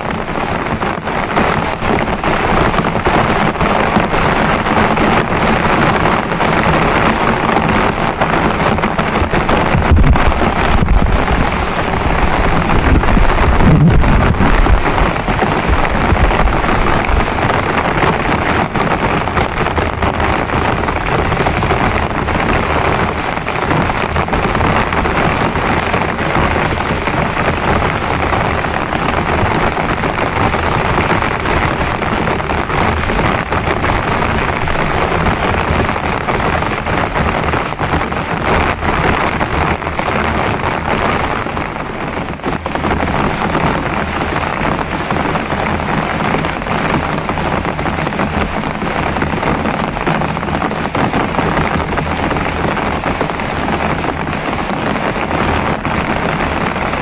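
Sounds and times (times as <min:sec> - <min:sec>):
heavy rain falling: 0:00.0 - 0:57.0
low rumble: 0:09.1 - 0:18.2.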